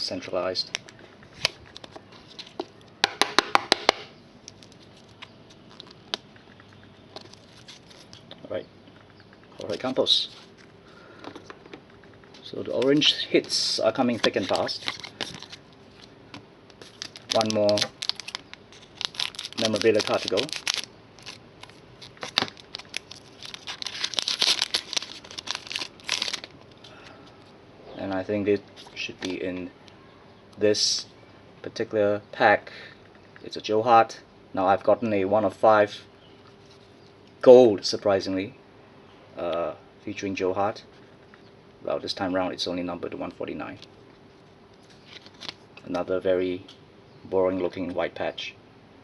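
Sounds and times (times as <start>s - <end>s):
foil pack tearing and crinkling: 14.0s - 15.6s, 16.8s - 26.6s, 45.0s - 45.6s.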